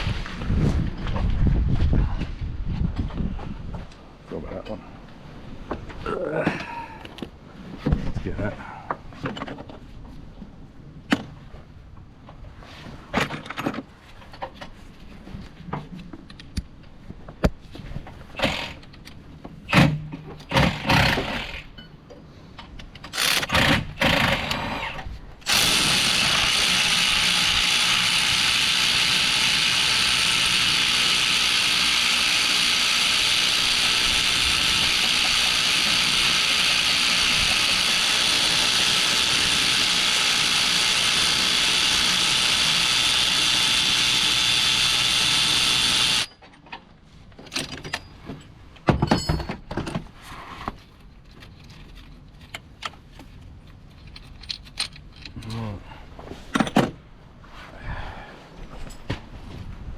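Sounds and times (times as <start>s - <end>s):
hand tools clinking and knocking: 46.2s - 50.1s, 51.2s - 55.6s.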